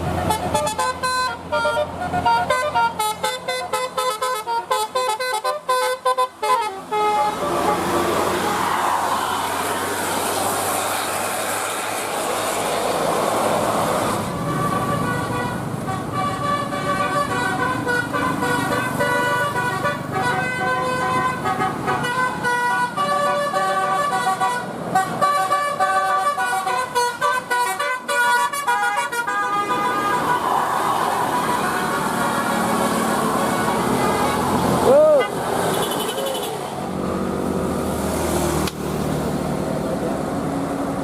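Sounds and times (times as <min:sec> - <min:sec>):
bus horn playing a tune: 0:00.0 - 0:08.6, 0:14.2 - 0:36.6
traffic noise: 0:00.0 - 0:41.0.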